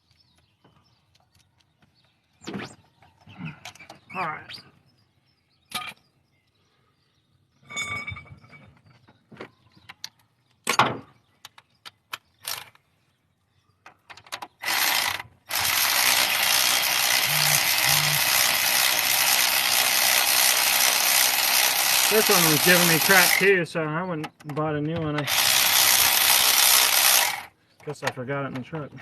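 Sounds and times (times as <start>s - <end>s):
power ratchet running: 14.6s - 23.4s, 25.3s - 27.5s.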